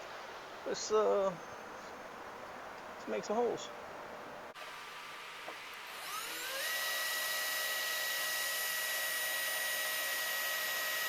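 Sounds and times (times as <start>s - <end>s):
electric drill drilling sheet metal: 5.9s - 11.0s.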